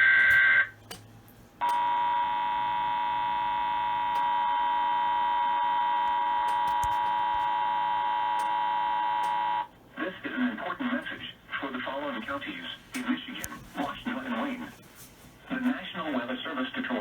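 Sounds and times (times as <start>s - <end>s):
steady alarm tone through tv: 0.0s - 0.8s, 1.6s - 9.8s.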